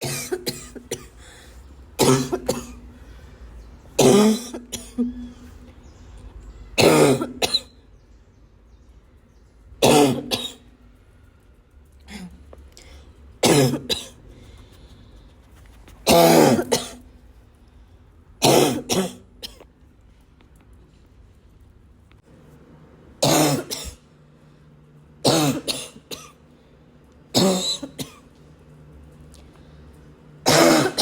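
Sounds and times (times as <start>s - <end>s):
person coughing harshly: 0.0s - 1.4s, 2.0s - 2.8s, 4.0s - 5.4s, 6.8s - 7.7s, 9.8s - 10.6s, 13.4s - 14.2s, 16.1s - 17.0s, 18.4s - 19.6s, 23.2s - 24.0s, 25.2s - 26.4s, 27.3s - 28.3s, 30.4s - 31.0s.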